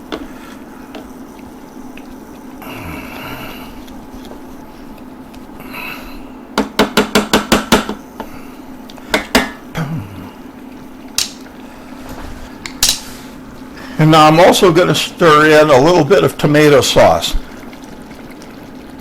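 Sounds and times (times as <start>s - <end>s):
spoon knocking against pot: 6.6s - 8.0s.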